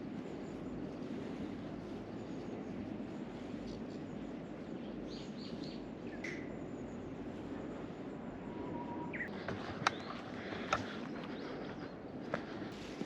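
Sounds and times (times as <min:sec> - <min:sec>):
birds chirping: 0:04.1 - 0:13.0.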